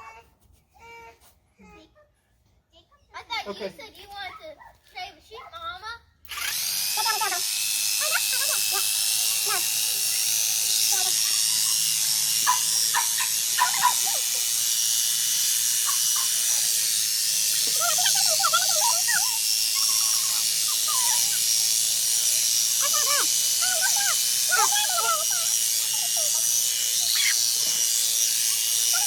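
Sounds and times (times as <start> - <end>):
electric clippers humming: 6.2 - 29.0
short wavering calls: 12.4 - 14.3.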